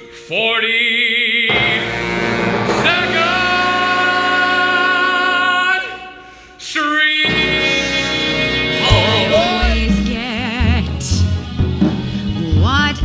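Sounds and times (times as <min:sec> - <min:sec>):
music: 0:00.0 - 0:13.0
ensemble and orchestra holding sung note: 0:01.5 - 0:13.0
short orchestral chord: 0:08.6 - 0:10.5.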